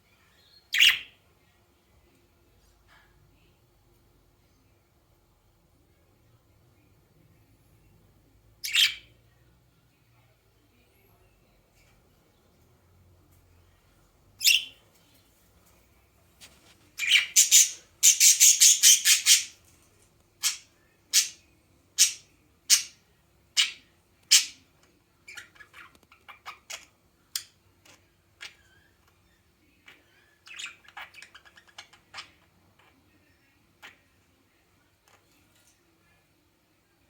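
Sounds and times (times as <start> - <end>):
bird squawking and chirping: 14.4 - 14.8, 17.0 - 19.5.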